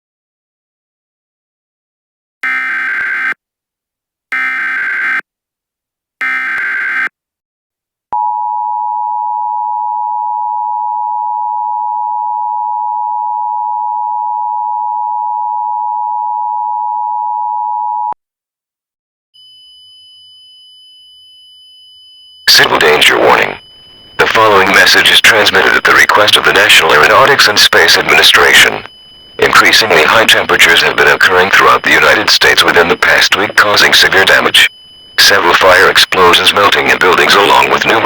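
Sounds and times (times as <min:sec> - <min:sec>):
buzzy digital data bursts: 0:02.4 - 0:03.4
loud dual alert tone: 0:02.4 - 0:03.4, 0:04.3 - 0:05.2, 0:06.2 - 0:07.1
faint steady high tone: 0:08.2 - 0:18.2, 0:19.4 - 0:38.0.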